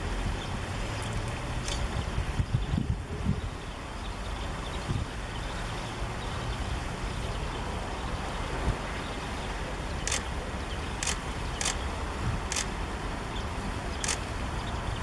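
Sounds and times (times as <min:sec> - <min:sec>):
outdoor rumble and hiss: 0:00.0 - 0:15.0
sharp clicks: 0:01.6 - 0:01.9, 0:10.1 - 0:10.4, 0:11.0 - 0:11.9, 0:12.5 - 0:12.8, 0:14.0 - 0:14.3.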